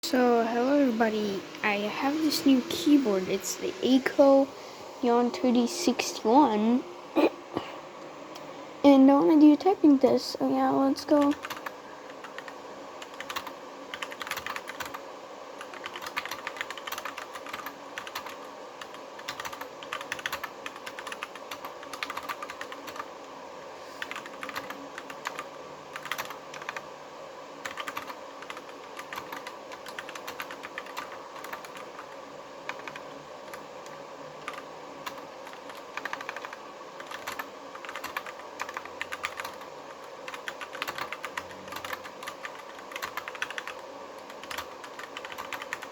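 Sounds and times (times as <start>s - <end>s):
steady background hum: 0.0s - 45.9s
fast typing on mechanical keyboard: 11.1s - 15.0s, 15.6s - 23.1s, 24.0s - 26.8s, 27.6s - 45.9s.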